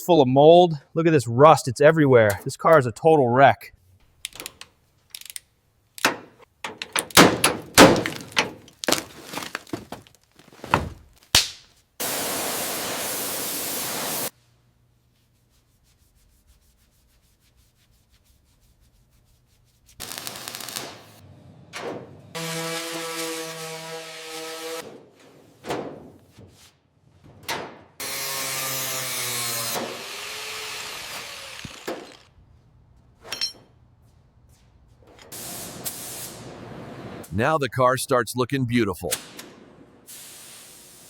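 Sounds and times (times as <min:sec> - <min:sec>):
metal knocks and clanks: 0:06.0 - 0:11.0
scraping: 0:06.8 - 0:11.2
steady hiss: 0:12.0 - 0:14.4, 0:40.1 - 0:41.0.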